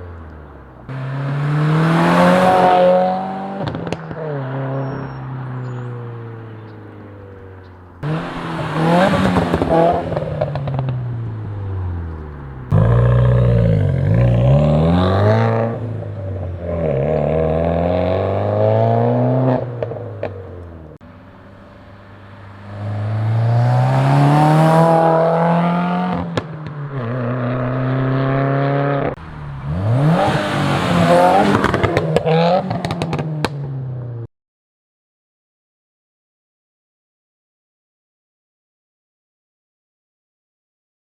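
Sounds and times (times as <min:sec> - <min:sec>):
car engine revving: 0:00.0 - 0:34.2
exhaust crackles and pops: 0:29.2 - 0:33.7.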